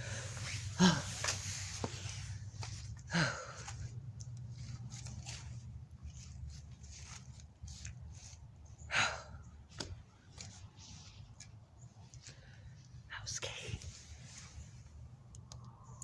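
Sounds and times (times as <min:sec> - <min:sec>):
rustling and handling noises: 0:00.0 - 0:15.8
low steady hum: 0:00.0 - 0:16.0.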